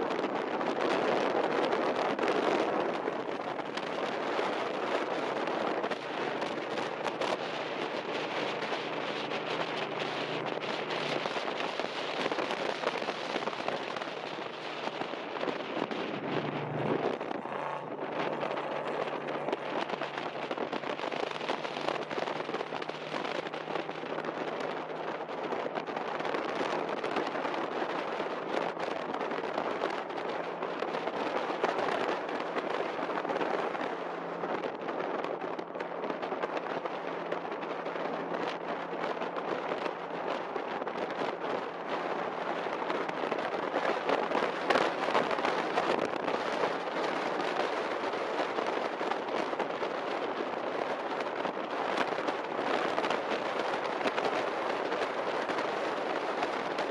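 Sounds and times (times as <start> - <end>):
gravel crackling and rattling: 0.0 - 56.9
off-road vehicle engine: 1.6 - 28.9.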